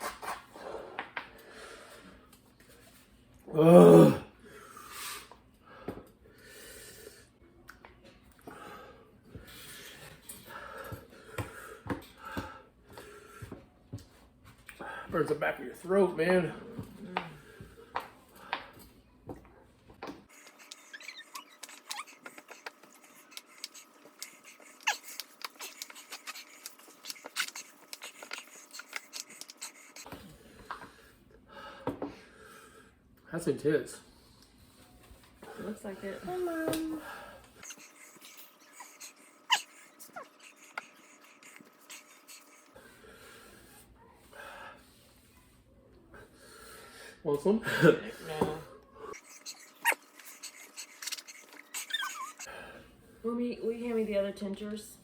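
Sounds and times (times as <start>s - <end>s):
person breathing hard and wheezing: 8.5s - 13.6s, 36.2s - 45.0s, 49.0s - 53.0s.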